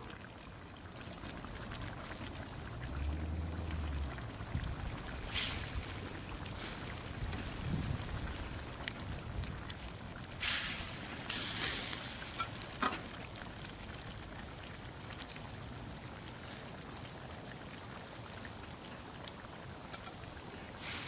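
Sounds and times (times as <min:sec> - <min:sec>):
food sizzling in a pan: 0:05.1 - 0:08.1, 0:10.4 - 0:14.1, 0:20.6 - 0:21.0.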